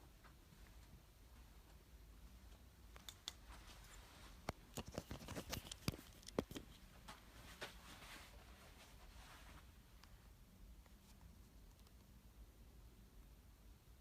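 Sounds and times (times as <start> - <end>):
faint irregular clicks and taps: 2.4 - 7.2.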